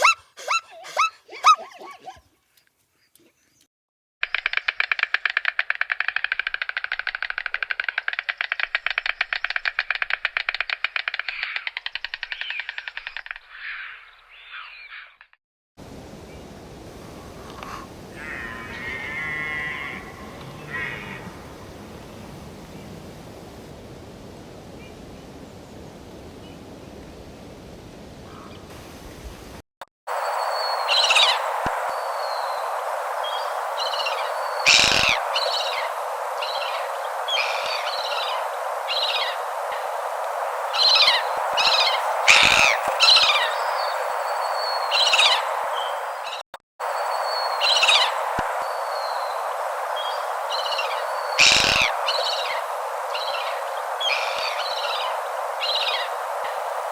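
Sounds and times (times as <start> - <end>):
steady hiss: 15.8 - 56.9
high bird chirps and calls: 30.7 - 31.5, 50.0 - 52.6, 53.2 - 56.1.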